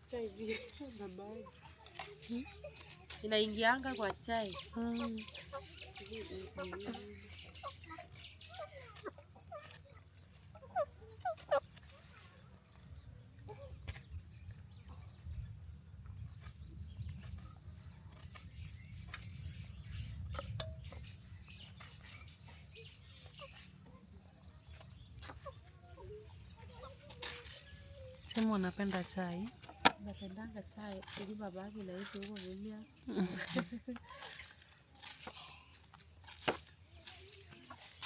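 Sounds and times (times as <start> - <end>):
chickens clucking: 0.3 - 12.6.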